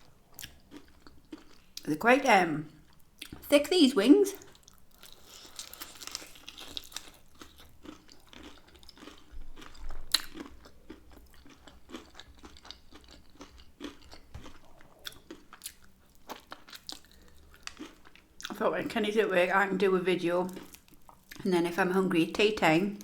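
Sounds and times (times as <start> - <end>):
chewing and crunching food: 0.0 - 1.9, 2.7 - 3.5, 4.3 - 18.6, 20.4 - 21.5.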